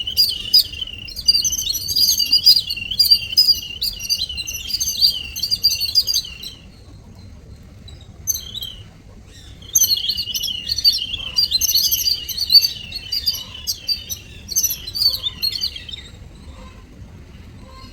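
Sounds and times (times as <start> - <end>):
weaver birds chirping: 0.0 - 17.9.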